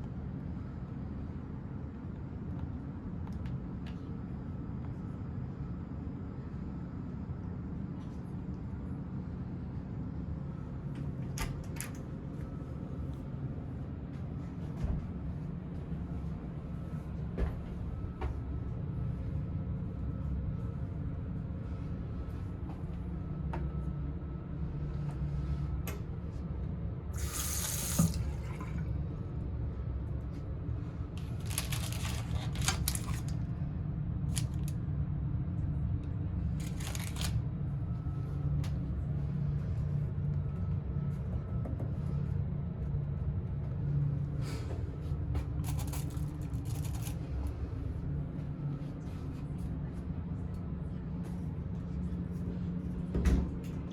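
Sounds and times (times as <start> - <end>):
steady low hum: 0.0 - 53.9
water running from tap: 27.2 - 28.8.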